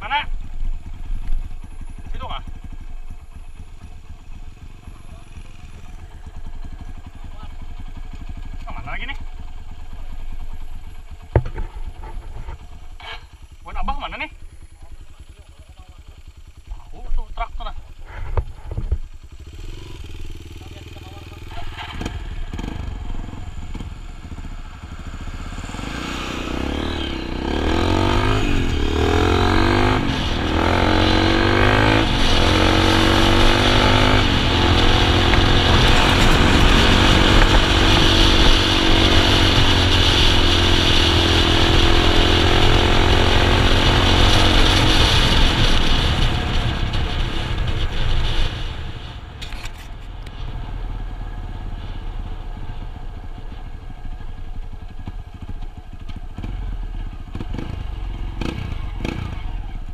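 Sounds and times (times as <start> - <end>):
vehicle engine revving: 17.6 - 53.5, 55.4 - 59.9.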